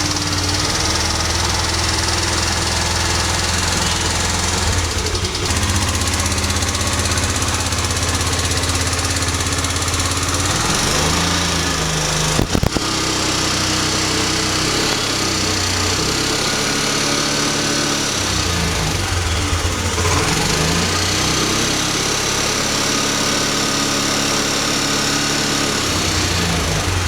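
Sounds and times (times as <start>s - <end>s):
motorcycle engine revving: 0.0s - 27.0s
sharp clicks: 12.3s - 16.0s.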